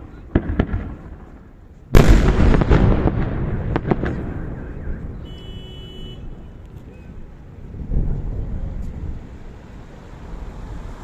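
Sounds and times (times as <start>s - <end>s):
fireworks rumbling and crackling: 0.0s - 5.4s, 6.3s - 10.8s
fireworks shell bursting with boom: 0.3s - 1.4s, 2.0s - 4.5s.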